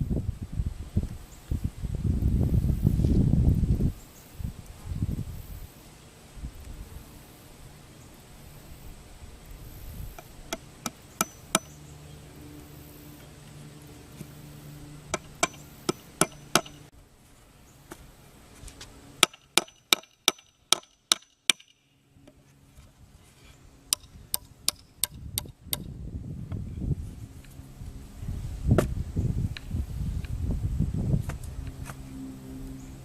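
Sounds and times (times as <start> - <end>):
hammer driving nails: 15.1 - 16.8, 19.2 - 21.8.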